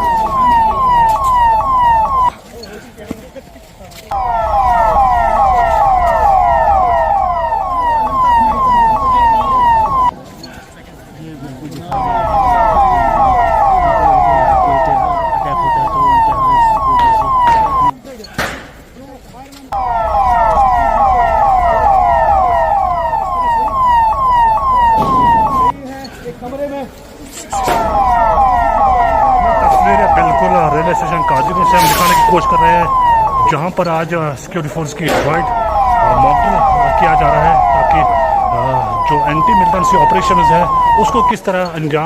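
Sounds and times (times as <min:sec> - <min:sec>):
emergency vehicle siren: 0:00.0 - 0:02.6, 0:04.0 - 0:10.8, 0:11.8 - 0:18.0, 0:19.7 - 0:25.8, 0:27.5 - 0:42.0.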